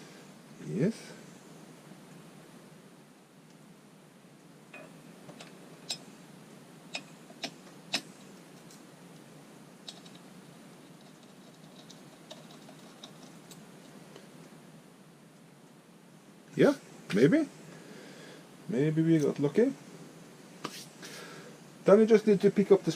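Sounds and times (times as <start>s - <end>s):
hand tools clicking and tapping: 6.9s - 8.8s, 11.0s - 14.0s.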